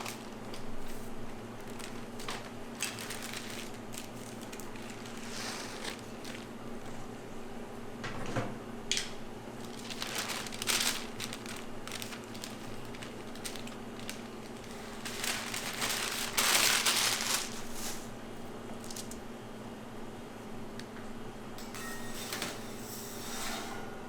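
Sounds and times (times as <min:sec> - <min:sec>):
crinkling and rustling: 0:00.0 - 0:07.1, 0:09.6 - 0:19.2
low steady hum: 0:00.0 - 0:22.6.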